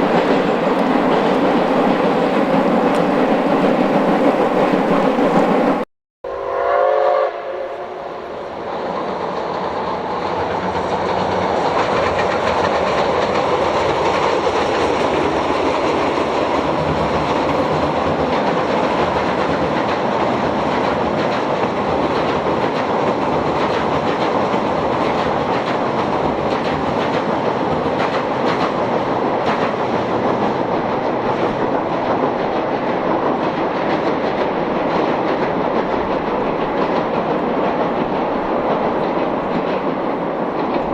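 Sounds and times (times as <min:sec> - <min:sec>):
wheels clicking over rail joints: 0:00.0 - 0:05.8, 0:10.4 - 0:40.9
train running noise: 0:00.0 - 0:40.9
steam whistle: 0:06.3 - 0:08.2.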